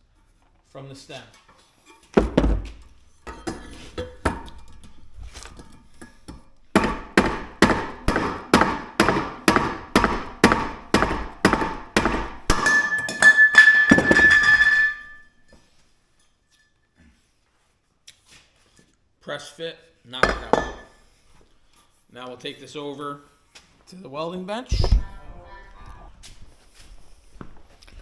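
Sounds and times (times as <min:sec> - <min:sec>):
hammer striking ringing metal: 0:06.0 - 0:15.3, 0:20.2 - 0:21.0.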